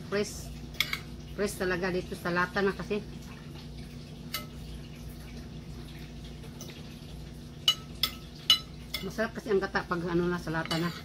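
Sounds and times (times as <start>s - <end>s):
low room hum: 0.0s - 11.0s
cutlery clinking on a plate: 7.6s - 9.1s, 10.6s - 11.0s.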